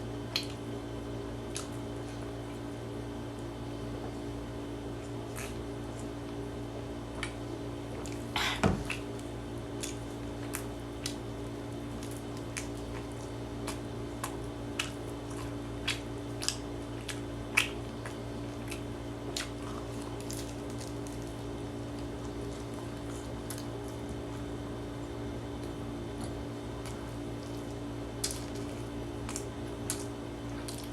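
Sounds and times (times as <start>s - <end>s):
steady low hum: 0.0s - 30.9s
person chewing food: 0.1s - 30.9s.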